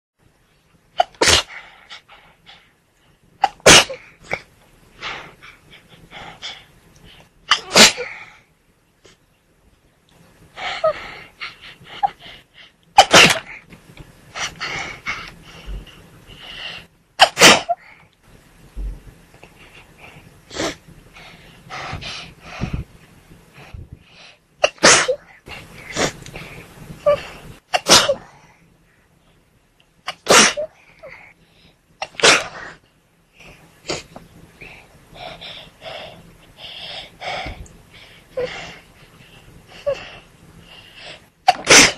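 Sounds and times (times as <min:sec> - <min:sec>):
person sneezing: 0:01.0 - 0:01.6, 0:03.4 - 0:04.4, 0:07.5 - 0:08.2, 0:13.0 - 0:13.5, 0:17.2 - 0:17.8, 0:24.6 - 0:25.3, 0:27.1 - 0:28.3, 0:30.1 - 0:30.7, 0:32.0 - 0:32.7, 0:41.5 - 0:41.9
soft breathing: 0:13.6 - 0:17.0, 0:17.8 - 0:24.6, 0:32.6 - 0:41.4
catching breaths and sniffing: 0:19.4 - 0:24.5, 0:25.4 - 0:27.6.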